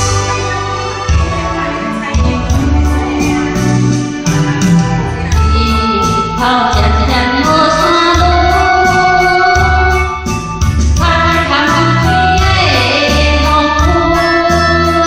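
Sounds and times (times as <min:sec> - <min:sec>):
steady bass beat: 0:00.0 - 0:08.7
karaoke backing track: 0:00.0 - 0:15.0
person singing a pop ballad: 0:00.0 - 0:15.0.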